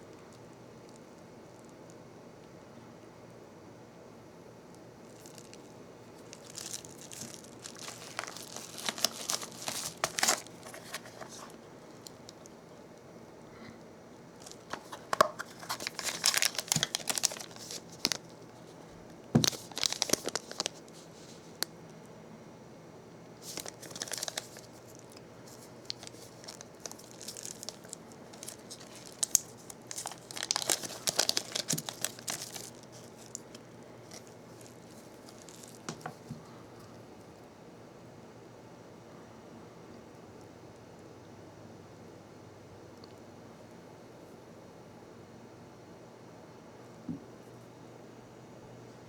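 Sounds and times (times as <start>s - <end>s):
packaging crinkling and tearing: 5.1s - 12.5s, 14.4s - 18.8s, 19.4s - 21.4s, 23.4s - 36.4s.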